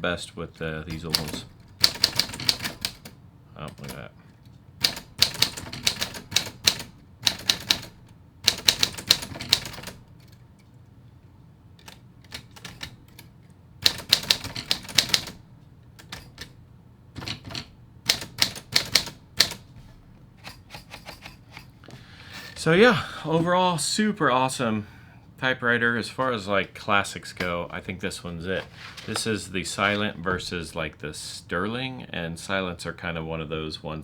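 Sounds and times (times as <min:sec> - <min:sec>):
typewriter keys clacking: 0:00.9 - 0:10.7, 0:11.8 - 0:15.4, 0:16.0 - 0:16.6, 0:17.2 - 0:19.7, 0:20.4 - 0:21.8.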